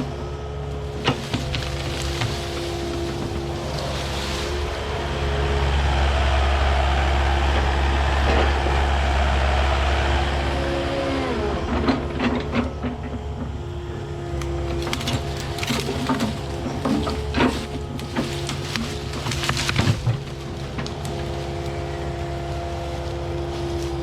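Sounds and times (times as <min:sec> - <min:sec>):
branches cracking: 0:00.0 - 0:06.9, 0:14.2 - 0:24.0
diesel excavator engine: 0:00.0 - 0:24.0
machine working through brush: 0:00.0 - 0:24.0.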